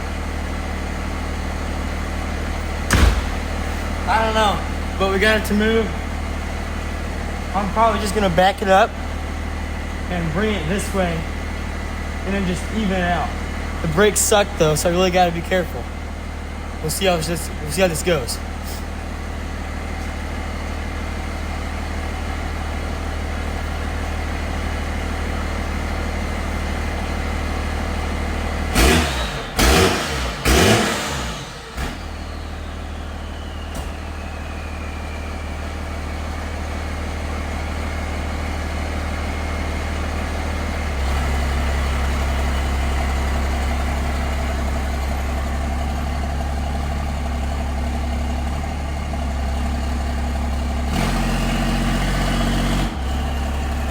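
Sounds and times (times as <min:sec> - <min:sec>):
truck engine idling: 0:00.0 - 0:53.9
loud knocks: 0:02.7 - 0:03.8.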